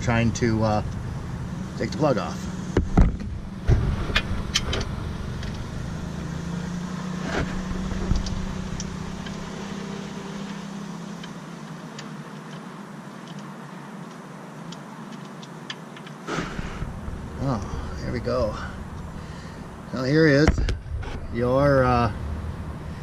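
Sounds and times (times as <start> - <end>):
low background rumble: 16.3 - 23.0.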